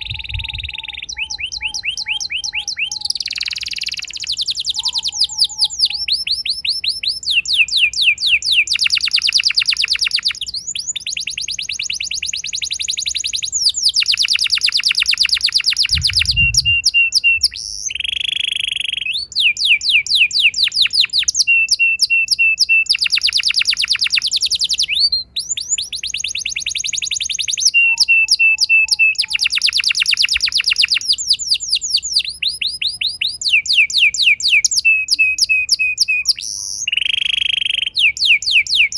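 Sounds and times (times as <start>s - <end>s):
canary singing: 0.0s - 38.9s.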